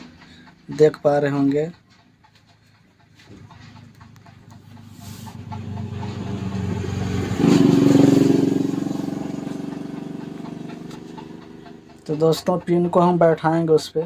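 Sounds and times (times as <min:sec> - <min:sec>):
vehicle engine passing by: 0:03.2 - 0:12.0.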